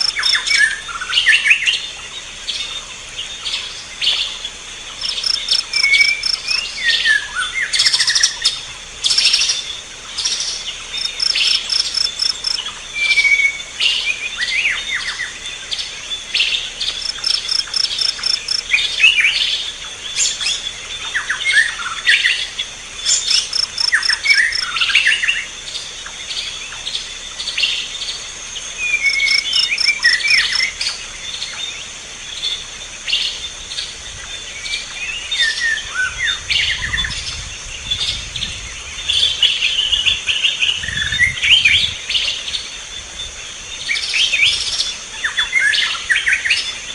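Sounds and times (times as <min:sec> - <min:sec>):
high insect drone: 0:00.0 - 0:46.9.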